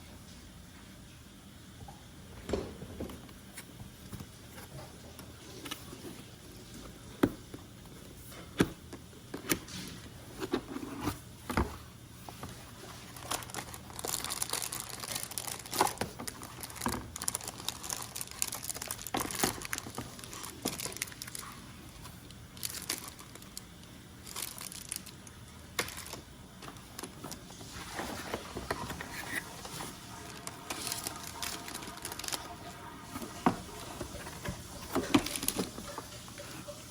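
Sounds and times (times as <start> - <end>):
plastic and paper crinkling: 9.6 - 36.9.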